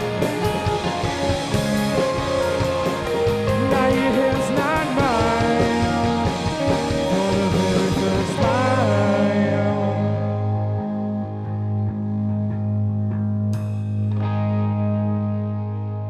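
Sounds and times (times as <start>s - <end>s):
drum kit: 0.0s - 10.8s, 13.4s - 14.5s
bass guitar: 0.0s - 16.0s
electric guitar with bent notes: 0.0s - 16.0s.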